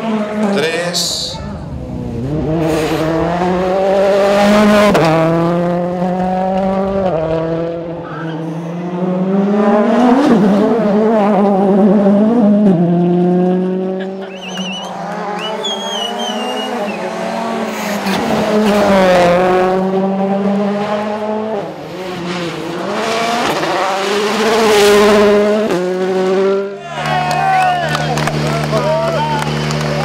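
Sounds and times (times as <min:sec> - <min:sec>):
rally car engine revving: 0:00.0 - 0:30.0
tyre squeal: 0:14.2 - 0:17.1.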